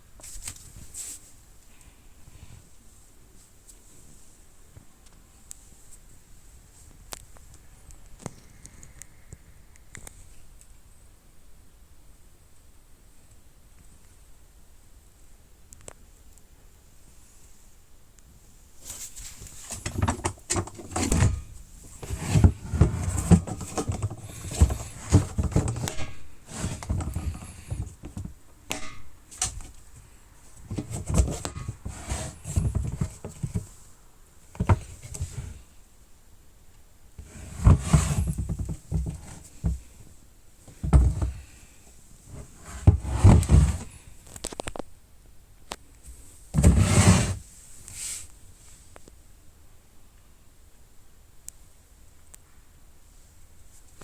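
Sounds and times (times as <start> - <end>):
plastic case scraping: 19.4 - 29.8, 30.6 - 33.7, 34.6 - 35.6, 37.2 - 39.9, 40.7 - 41.4, 42.3 - 44.0, 46.5 - 47.4
plastic tool case knocks and clicks: 19.7 - 29.6.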